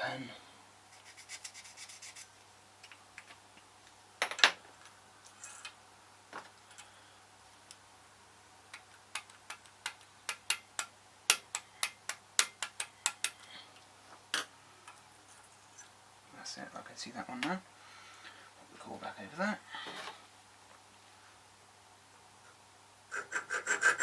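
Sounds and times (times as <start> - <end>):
small sharp clicks and taps: 8.7 - 15.0.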